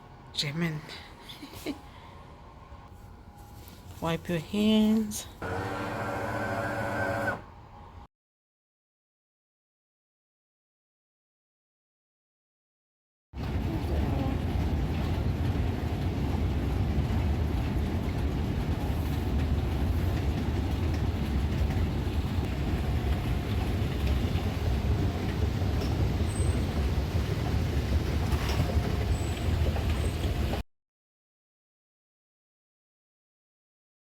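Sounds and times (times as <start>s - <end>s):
airliner cabin rumble: 13.4s - 30.6s.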